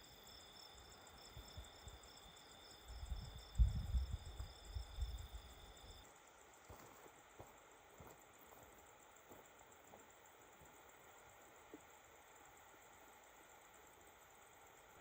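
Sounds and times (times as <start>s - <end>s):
night insects chirping: 0.0s - 15.0s.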